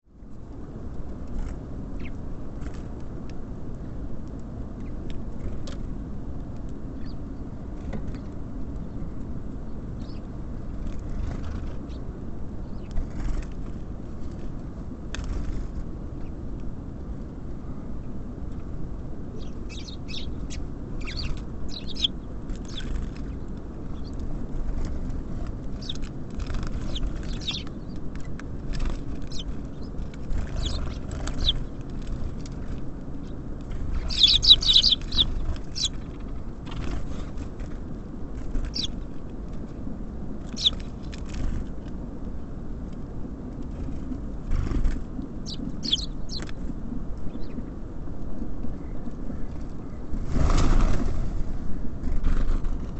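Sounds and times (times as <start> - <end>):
steady low rumble: 0.1 - 52.9
songbirds chirping: 1.9 - 2.3, 6.9 - 13.5, 17.4 - 37.6, 38.2 - 41.5, 44.7 - 50.1.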